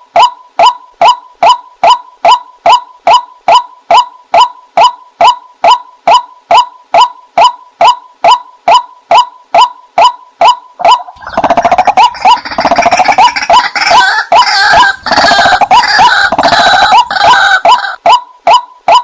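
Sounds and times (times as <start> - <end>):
harsh chatter of bird calls: 11.0 - 18.0.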